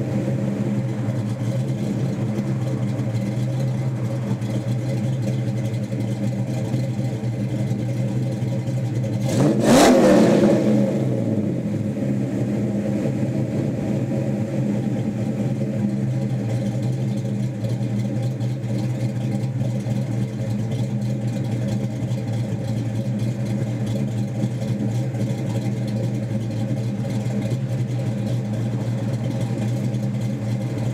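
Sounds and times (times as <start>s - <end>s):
car engine idling: 0.0s - 30.9s
engine revving: 9.2s - 16.5s.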